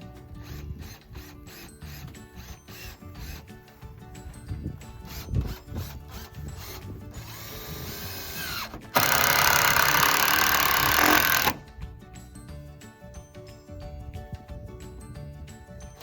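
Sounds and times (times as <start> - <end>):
power drill grinding into metal: 5.1 - 11.7.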